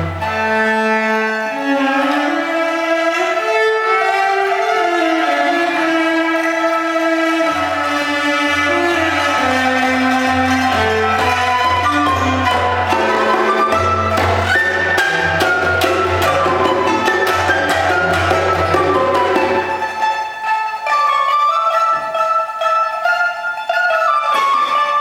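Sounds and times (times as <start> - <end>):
cello: 0.0 - 25.0
pipa plucking: 0.0 - 25.0
hand percussion: 3.1 - 25.0
flute: 10.3 - 20.2.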